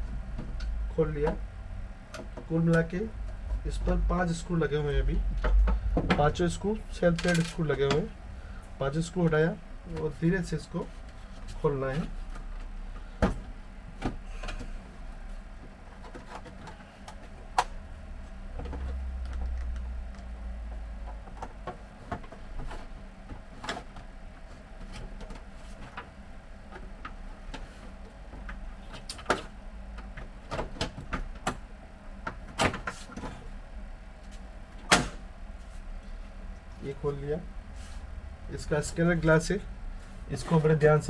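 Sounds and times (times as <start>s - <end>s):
low rumble: 3.1s - 7.0s.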